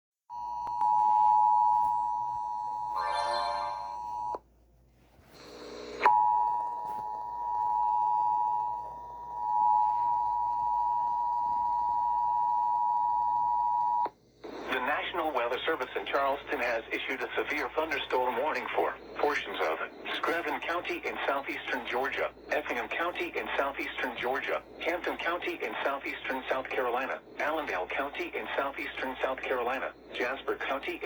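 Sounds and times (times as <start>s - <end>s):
two-tone alert signal: 3.0s - 4.2s.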